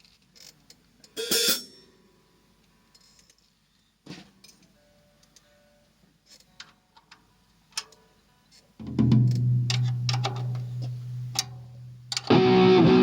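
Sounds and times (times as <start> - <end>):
drum hits: 8.8 - 12.4.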